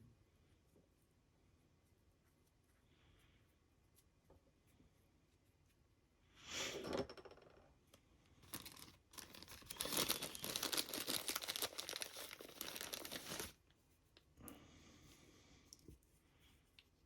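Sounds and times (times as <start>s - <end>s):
plastic bag crinkling: 8.4s - 13.6s.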